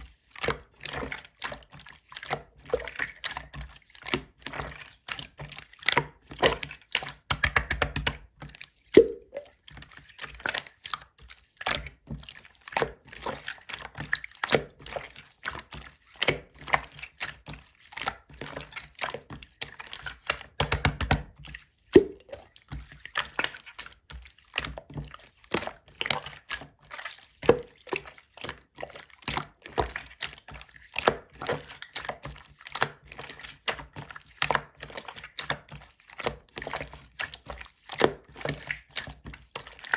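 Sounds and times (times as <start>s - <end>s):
slime clicks and wet pops: 9.0s - 9.4s, 20.4s - 21.3s, 21.9s - 22.3s.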